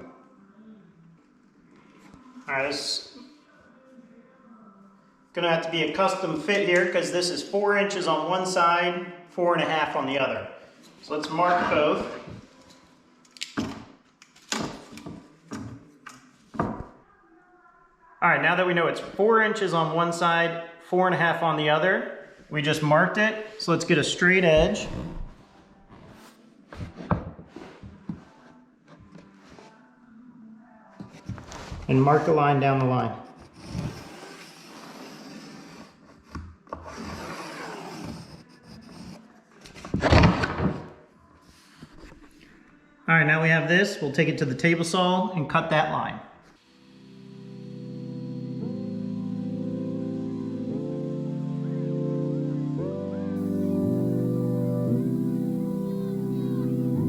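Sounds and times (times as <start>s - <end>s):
pencil scratching on board: 33.4s - 39.2s.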